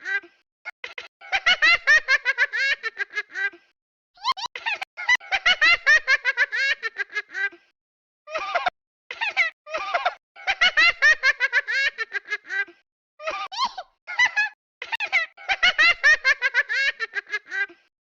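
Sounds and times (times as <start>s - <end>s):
high-pitched giggling: 4.2s - 5.4s.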